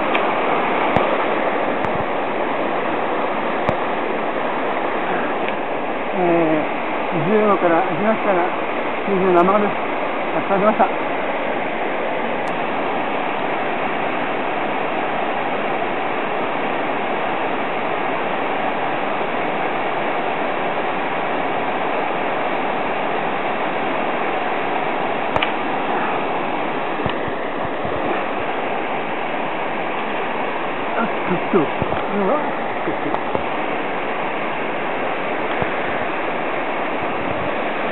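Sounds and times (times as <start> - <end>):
mountain stream rushing: 0.0 - 37.9.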